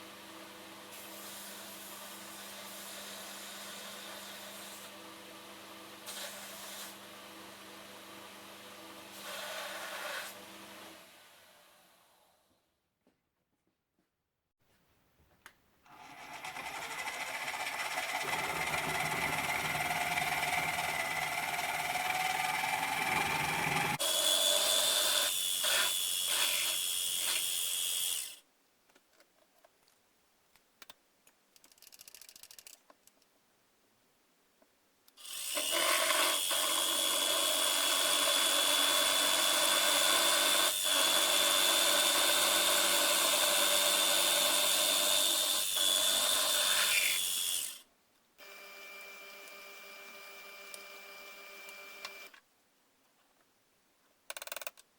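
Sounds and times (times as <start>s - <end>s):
electric power tool whining: 15.9s - 27.5s.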